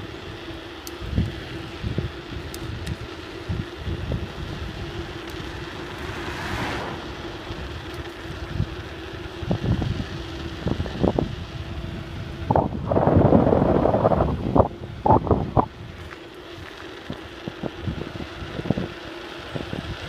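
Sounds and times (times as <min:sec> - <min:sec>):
bicycle jolts and rattles: 0:00.0 - 0:20.0
wind buffeting microphone: 0:01.0 - 0:16.1.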